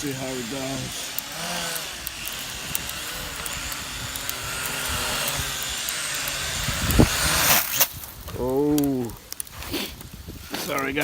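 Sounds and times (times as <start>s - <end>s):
drone propellers whirring: 0.0s - 7.9s.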